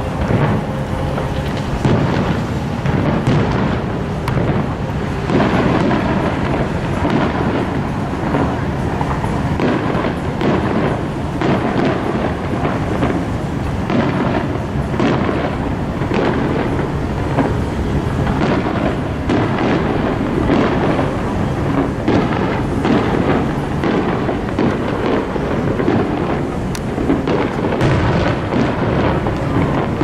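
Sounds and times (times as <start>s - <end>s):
fireworks crackle: 0.0s - 30.0s
fireworks shells booming: 0.0s - 30.0s.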